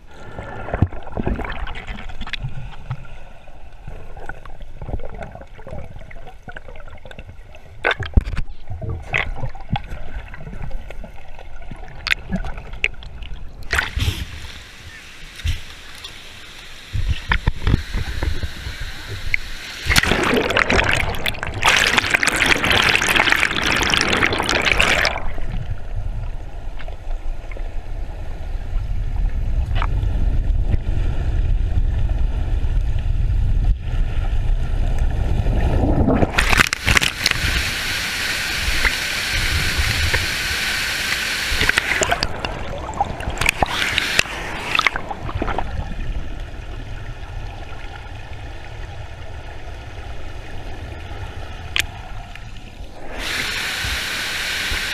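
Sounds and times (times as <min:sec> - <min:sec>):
river water rushing and gurgling: 0:35.7 - 0:46.3.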